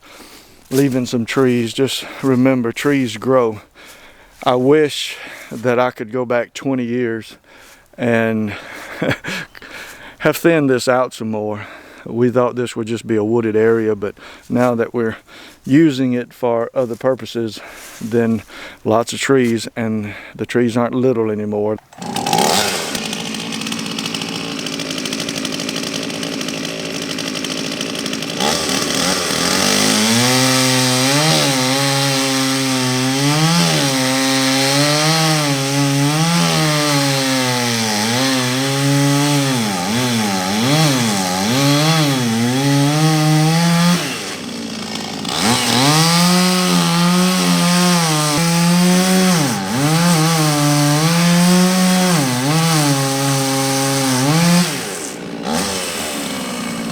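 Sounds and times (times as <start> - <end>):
chainsaw cutting wood: 0.0 - 4.5, 21.8 - 56.9.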